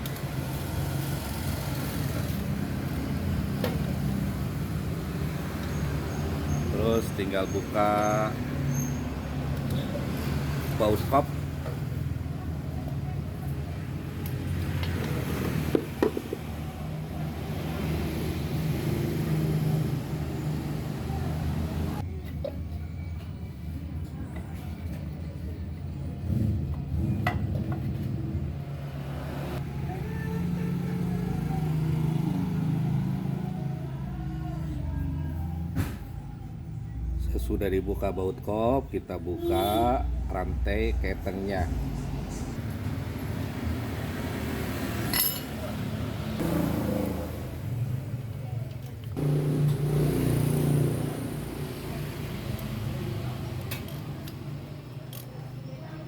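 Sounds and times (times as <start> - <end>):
vehicle engine humming: 0.0 - 56.0
engine running: 45.1 - 55.3.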